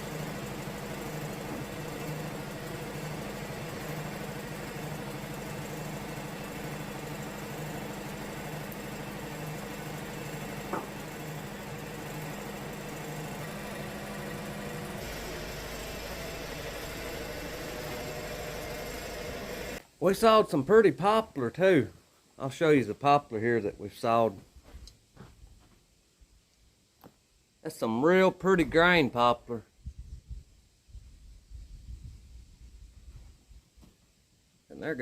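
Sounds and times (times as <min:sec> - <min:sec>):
sawmill engine running: 0:00.0 - 0:19.8.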